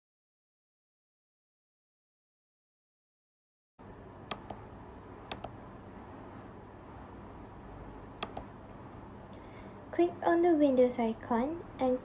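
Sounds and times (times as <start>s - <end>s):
computer mouse double clicks: 4.3s - 4.6s, 5.3s - 5.5s, 8.2s - 8.5s.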